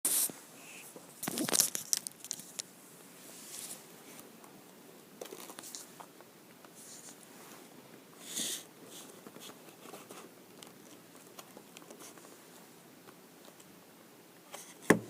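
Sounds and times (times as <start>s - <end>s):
packaging crinkling and clicking: 1.2s - 2.7s
packaging rustling: 1.2s - 2.7s.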